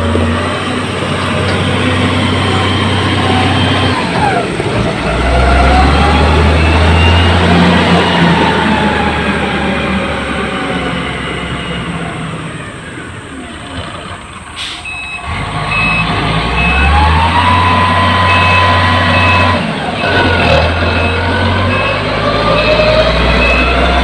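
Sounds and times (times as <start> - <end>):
diesel engine revving: 0.0 - 24.0
reversing alarm beeping: 1.9 - 4.4, 5.3 - 9.6, 14.6 - 24.0.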